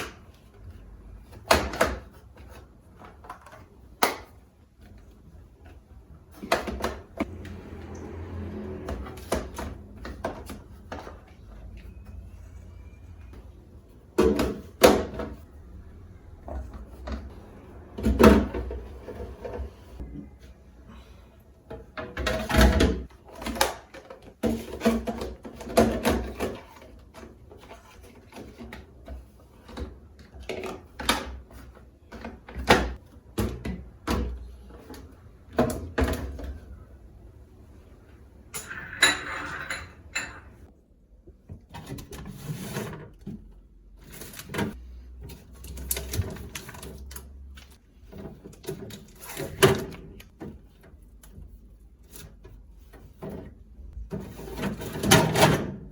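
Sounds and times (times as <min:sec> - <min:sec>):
kitchen items knocking and clicking: 0:06.3 - 0:07.3, 0:14.1 - 0:15.5, 0:21.7 - 0:36.6, 0:38.5 - 0:40.7, 0:52.8 - 0:55.9
cupboard doors and drawers: 0:06.3 - 0:11.4.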